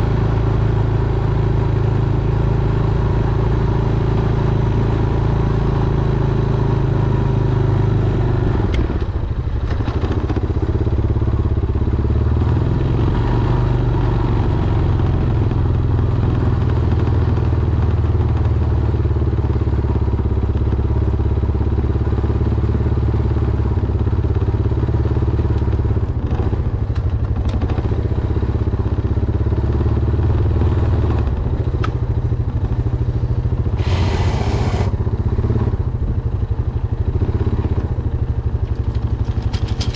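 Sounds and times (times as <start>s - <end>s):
atv engine running: 0.0s - 39.9s
clanks and thumps: 38.7s - 39.9s.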